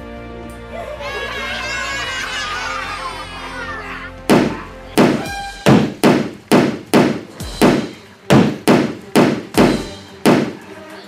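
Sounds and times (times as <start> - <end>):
sharp knocks: 4.3 - 10.6.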